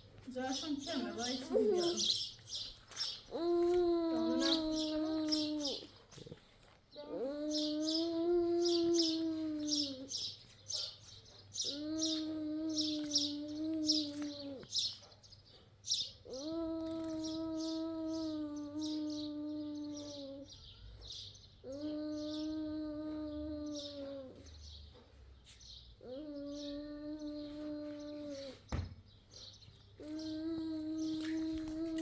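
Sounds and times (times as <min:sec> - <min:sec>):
small birds chirping: 0:00.0 - 0:32.0
person humming: 0:07.0 - 0:10.1, 0:11.7 - 0:14.7, 0:16.3 - 0:20.5, 0:21.7 - 0:24.4, 0:26.0 - 0:28.6.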